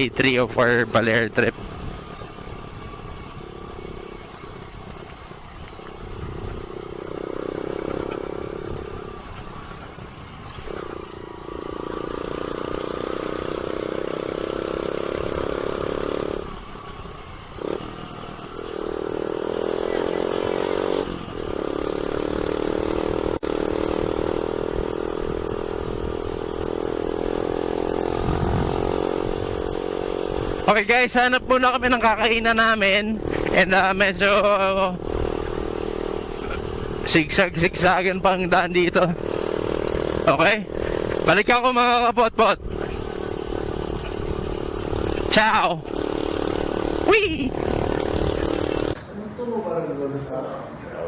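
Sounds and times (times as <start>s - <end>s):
motorcycle engine running: 0.0s - 49.2s
wind noise: 1.5s - 11.0s, 22.4s - 27.3s, 27.9s - 30.7s, 34.8s - 35.8s, 42.6s - 45.4s.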